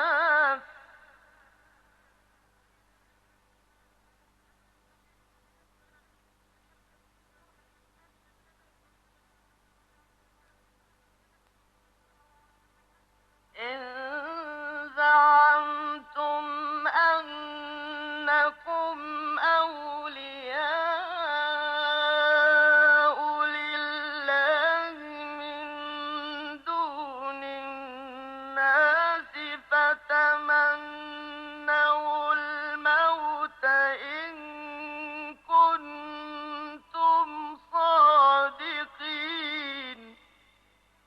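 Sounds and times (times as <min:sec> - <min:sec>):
man chanting melodically: 0:13.5 - 0:40.3.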